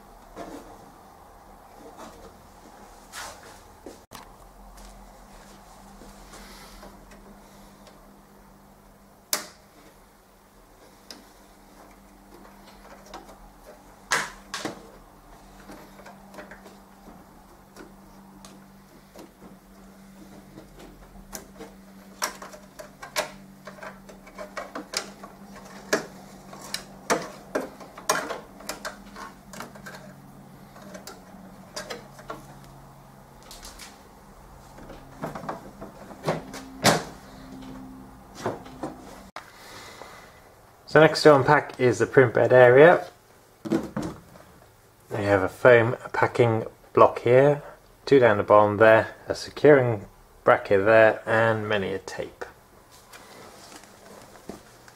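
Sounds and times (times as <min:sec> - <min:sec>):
faint steady hum: 0:00.0 - 0:54.9.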